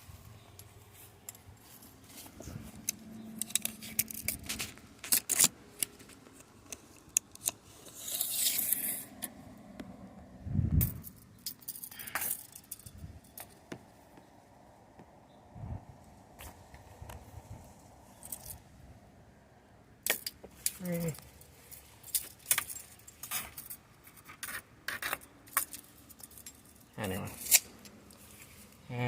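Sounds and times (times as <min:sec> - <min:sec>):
clicks and metallic rattles: 0:00.6 - 0:07.6, 0:20.0 - 0:28.2
hissing scrape: 0:07.7 - 0:09.3.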